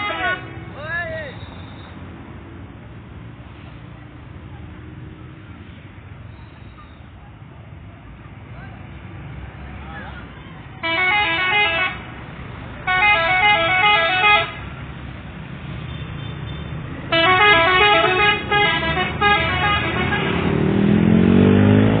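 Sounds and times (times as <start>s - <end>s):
musical air horn: 0.0s - 0.5s, 10.8s - 12.0s, 12.9s - 14.6s, 17.1s - 20.5s
low engine note rising: 18.9s - 22.0s.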